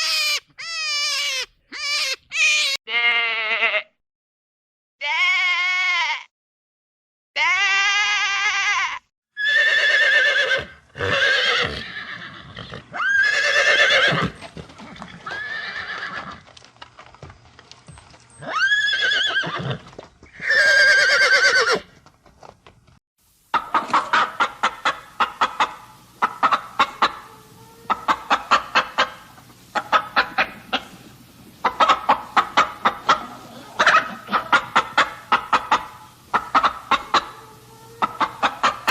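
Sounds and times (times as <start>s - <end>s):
animals bleating: 1.1s - 4.0s, 5.0s - 6.3s
chickens clucking: 23.5s - 38.9s.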